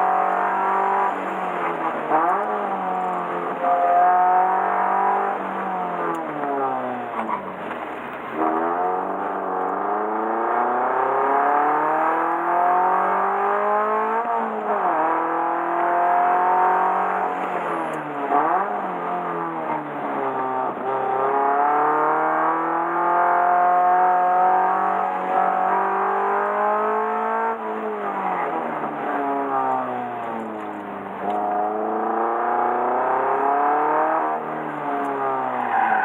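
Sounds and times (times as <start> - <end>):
car engine revving hard: 0.0 - 7.5, 8.4 - 36.0.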